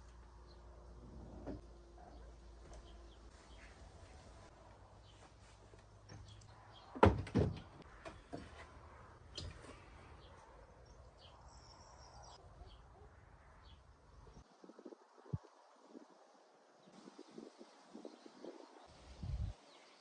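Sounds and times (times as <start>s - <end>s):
bird chirping: 9.3s - 14.4s.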